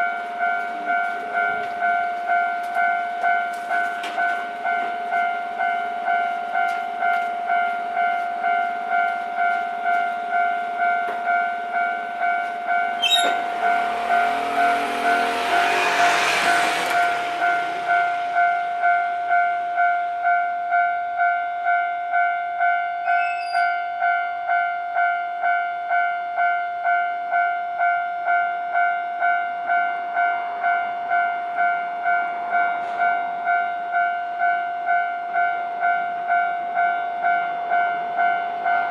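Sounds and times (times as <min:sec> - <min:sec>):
train wheels rumbling on rails: 0:00.0 - 0:20.3
level crossing warning bell: 0:00.0 - 0:38.9.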